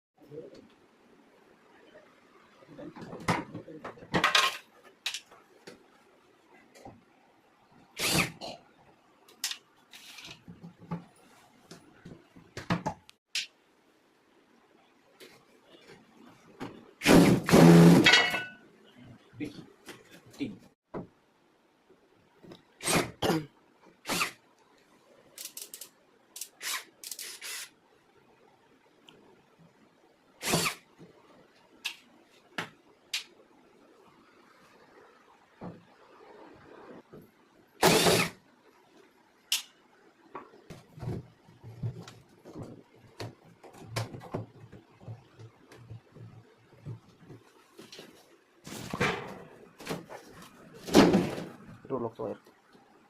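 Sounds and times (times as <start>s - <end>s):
tools knocking and scraping: 18.0s - 18.6s.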